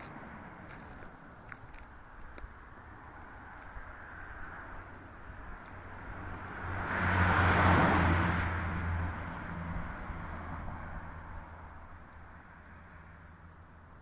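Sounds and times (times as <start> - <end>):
vehicle passing by: 2.9 - 13.5.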